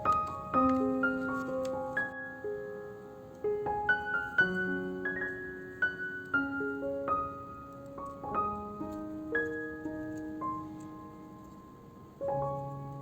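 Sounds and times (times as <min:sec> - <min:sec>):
gentle piano melody: 0:00.0 - 0:13.0.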